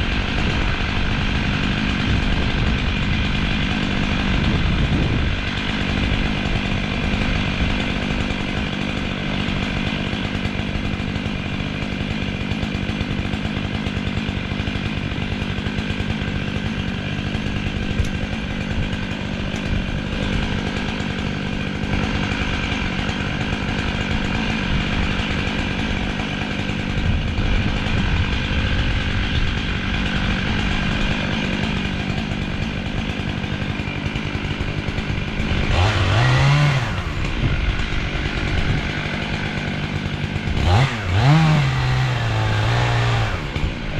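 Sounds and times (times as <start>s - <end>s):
chainsaw cutting tree trunk: 0.0s - 43.9s.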